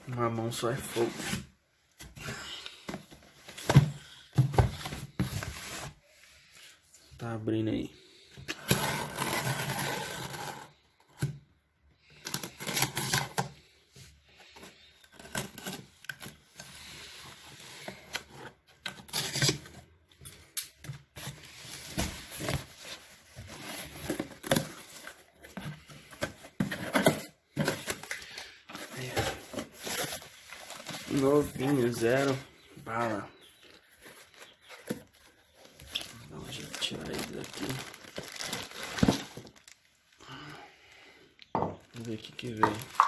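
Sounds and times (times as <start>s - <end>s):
cardboard box rustling and tearing: 8.6s - 10.7s, 21.2s - 33.2s, 33.8s - 39.8s.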